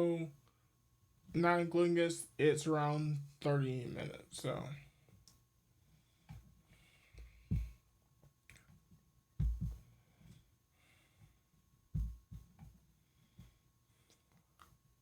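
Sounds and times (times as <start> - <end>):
dull low thumps: 7.4 - 7.8, 9.4 - 9.8, 12.0 - 12.5.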